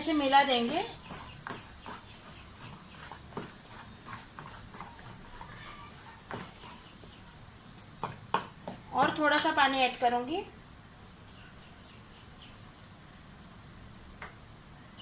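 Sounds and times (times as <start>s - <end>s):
batter being mixed in a bowl: 0.0s - 9.7s.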